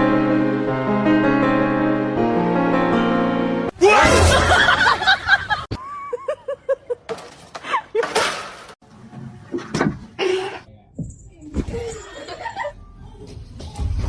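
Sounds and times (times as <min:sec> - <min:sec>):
music: 0:00.0 - 0:03.7, 0:12.7 - 0:14.0
person laughing loudly: 0:04.0 - 0:07.1.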